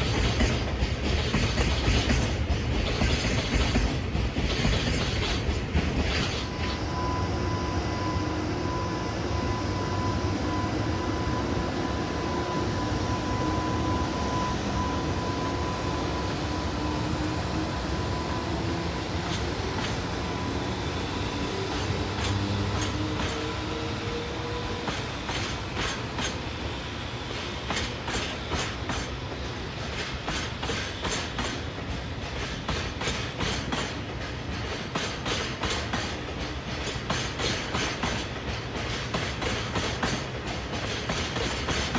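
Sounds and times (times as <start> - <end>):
electric locomotive motor whine: 6.1 - 32.5, 35.2 - 41.9.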